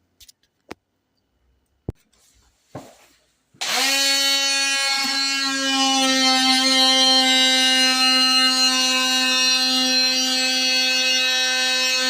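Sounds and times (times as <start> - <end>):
power tool motor running: 3.6 - 12.0.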